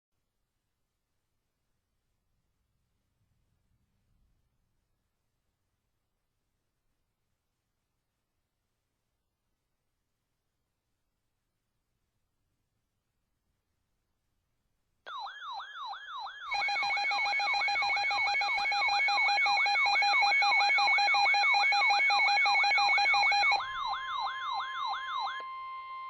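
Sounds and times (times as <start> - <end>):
fast yelping siren: 15.1 - 26.0.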